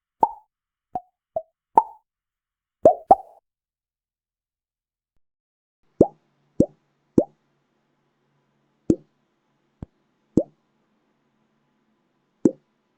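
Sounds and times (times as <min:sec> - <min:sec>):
pop-up sound effects: 0:01.8 - 0:02.0, 0:02.9 - 0:03.4.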